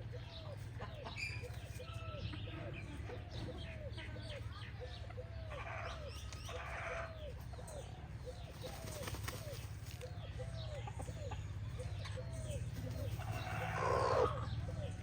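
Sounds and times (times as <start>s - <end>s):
chickens low calls: 0.0s - 15.0s.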